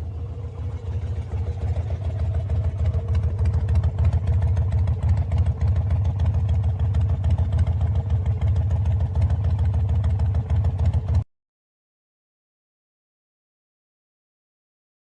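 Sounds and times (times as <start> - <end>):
motorcycle engine idling: 0.0 - 11.2.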